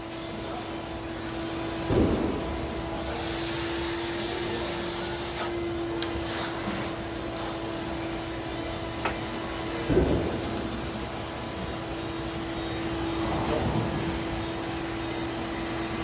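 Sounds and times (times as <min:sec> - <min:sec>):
machine hissing: 0:03.0 - 0:05.6.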